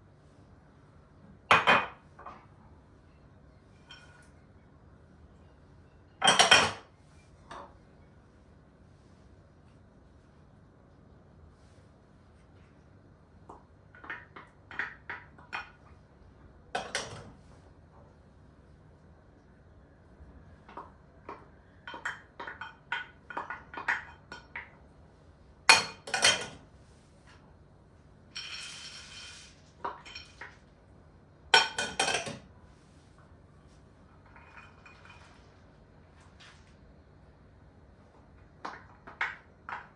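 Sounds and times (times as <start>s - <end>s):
dishes and cutlery clattering: 3.8s - 4.3s, 6.2s - 6.9s, 25.7s - 26.6s, 28.4s - 30.6s, 31.6s - 32.5s, 34.2s - 35.4s
utensils clinking against dishes: 3.8s - 4.4s, 31.6s - 32.5s.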